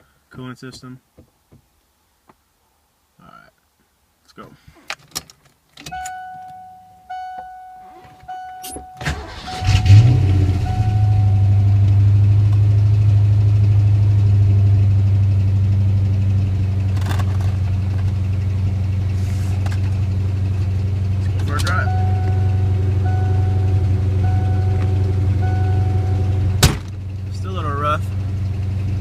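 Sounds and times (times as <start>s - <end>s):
car engine cranking and idling: 5.7s - 29.0s
warning chime dinging: 5.9s - 11.9s, 21.4s - 26.6s.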